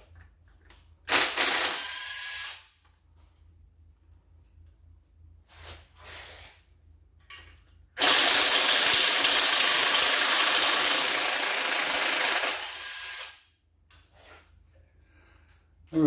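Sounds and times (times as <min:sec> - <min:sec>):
shop tool rushing noise: 0:08.0 - 0:13.3.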